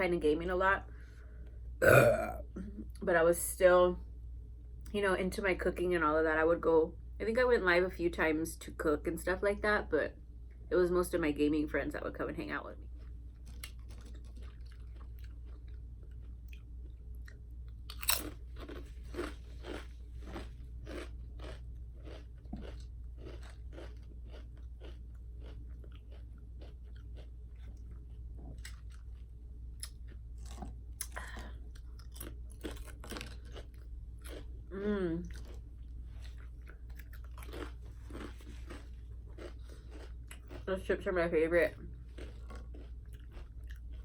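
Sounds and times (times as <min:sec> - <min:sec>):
crunching potato chips: 0:12.9 - 0:16.7, 0:17.9 - 0:34.5, 0:35.3 - 0:40.7, 0:42.1 - 0:44.0.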